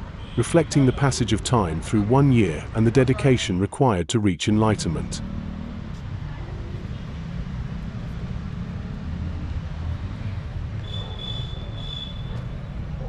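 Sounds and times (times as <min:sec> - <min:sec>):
traffic rumble: 0:00.0 - 0:13.0
high whistle-like tone: 0:10.8 - 0:12.3.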